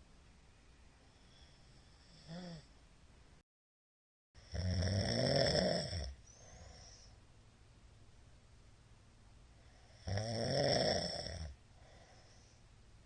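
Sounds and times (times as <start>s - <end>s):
man snoring: 1.9s - 2.7s, 4.4s - 7.0s, 9.9s - 12.3s.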